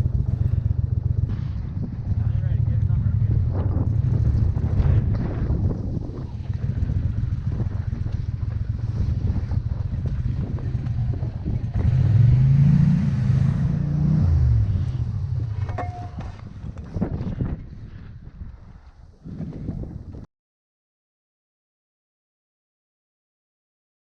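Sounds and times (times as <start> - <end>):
boat motor revving: 0.0 - 16.7.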